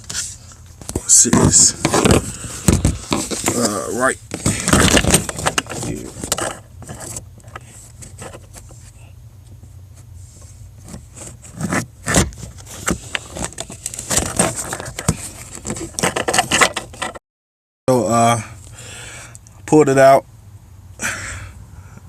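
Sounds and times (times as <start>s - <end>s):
low steady hum: 0.0s - 17.2s.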